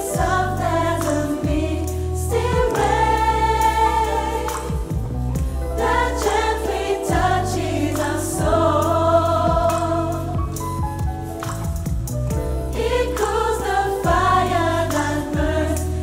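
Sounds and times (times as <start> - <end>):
gospel choir singing: 0.0 - 11.3, 12.4 - 16.0.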